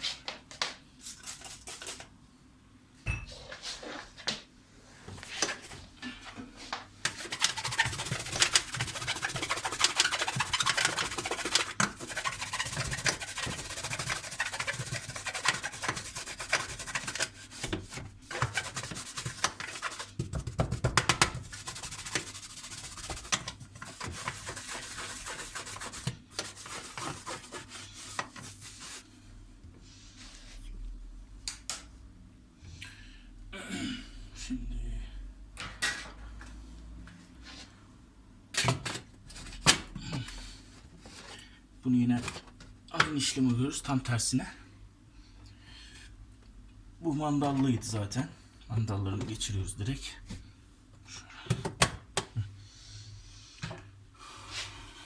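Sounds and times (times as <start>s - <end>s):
scrubbing dishwasher parts: 7.0s - 29.0s.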